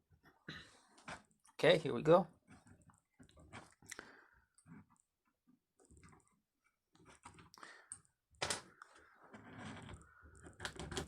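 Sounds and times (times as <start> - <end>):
small parts clicking and knocking: 5.8 - 11.0.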